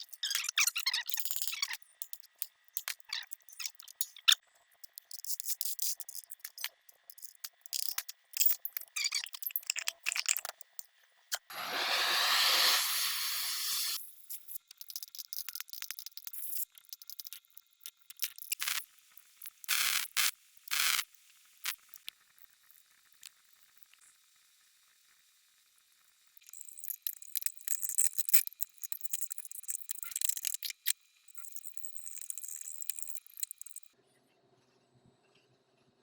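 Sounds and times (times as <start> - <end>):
steady hiss: 11.5 - 14.0.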